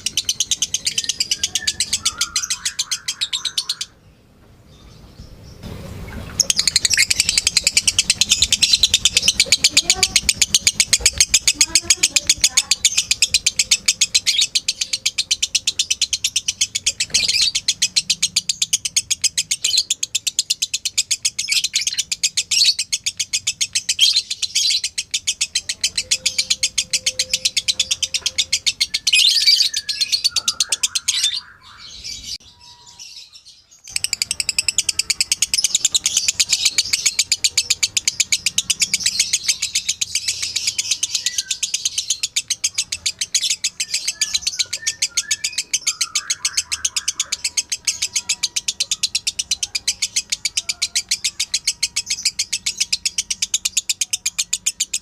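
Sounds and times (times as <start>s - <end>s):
lovebird chattering: 0.0s - 4.0s, 6.1s - 33.0s, 33.9s - 55.0s.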